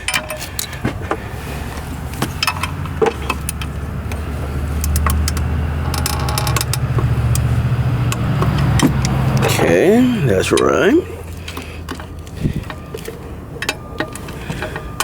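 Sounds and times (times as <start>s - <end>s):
metal tools clinking: 0.0s - 0.8s, 9.3s - 15.0s.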